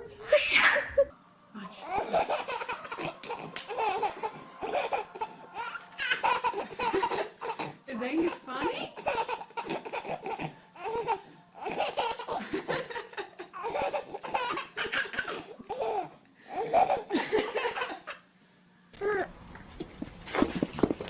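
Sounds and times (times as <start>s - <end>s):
child laughing: 0.0s - 1.1s, 1.9s - 7.7s, 8.3s - 16.0s, 16.6s - 18.2s.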